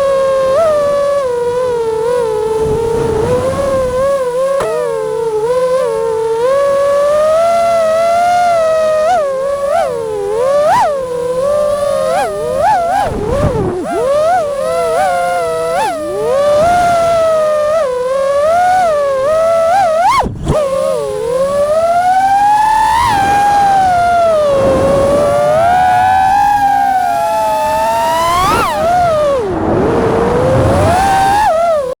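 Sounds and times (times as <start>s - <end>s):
drone motors and propellers whining: 0.0s - 32.0s.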